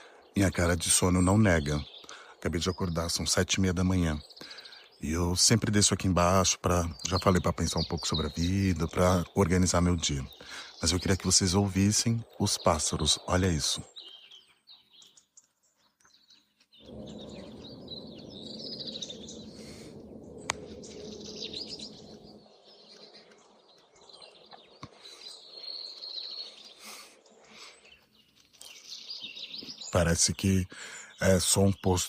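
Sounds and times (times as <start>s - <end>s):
birds chirping and singing: 0.0s - 32.0s
low rumble: 16.8s - 23.6s.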